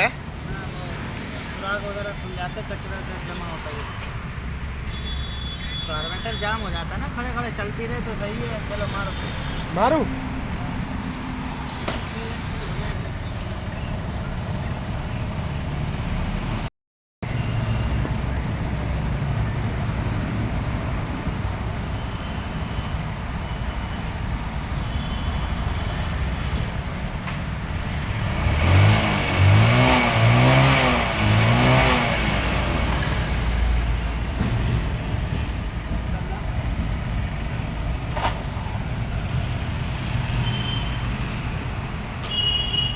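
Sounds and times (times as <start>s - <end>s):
motorcycle engine revving: 27.7s - 34.2s.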